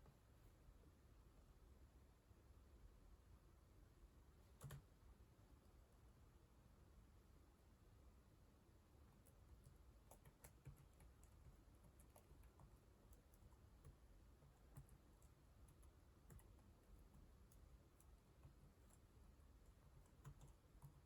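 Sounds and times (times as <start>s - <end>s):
computer keyboard typing: 4.6s - 4.9s, 9.2s - 21.0s.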